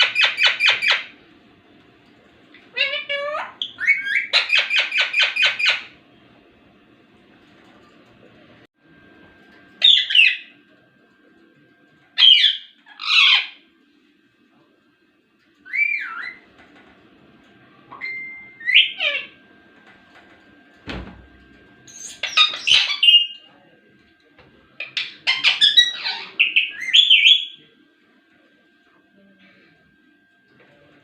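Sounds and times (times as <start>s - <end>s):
parrot squawking and chirping: 0.0s - 1.2s, 2.7s - 5.9s, 9.8s - 10.5s, 12.2s - 13.6s, 15.7s - 16.4s, 17.9s - 19.4s, 21.9s - 23.4s, 24.8s - 27.6s.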